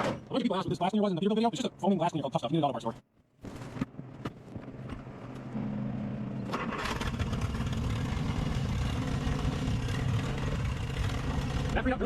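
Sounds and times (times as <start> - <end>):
car engine revving: 5.0 - 12.0.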